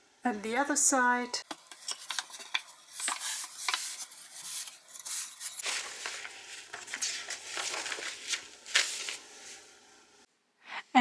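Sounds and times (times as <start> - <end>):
wood rubbing and scraping: 1.5 - 8.0.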